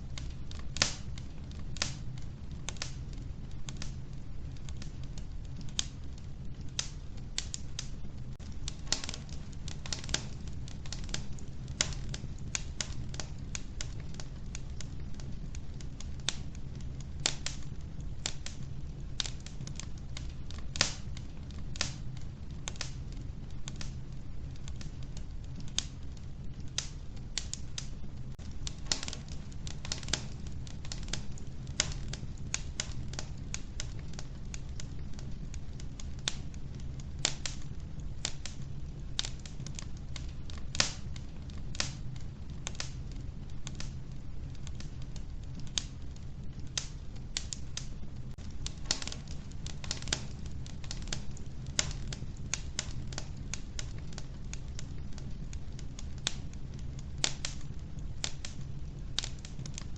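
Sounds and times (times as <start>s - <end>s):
wood fire crackling in a stove: 0.0s - 59.9s.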